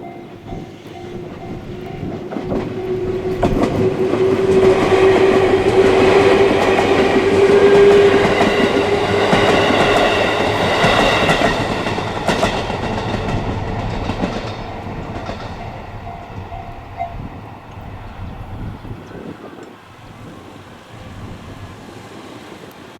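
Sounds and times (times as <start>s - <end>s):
train wheels clacking on rail joints: 0.0s - 20.3s.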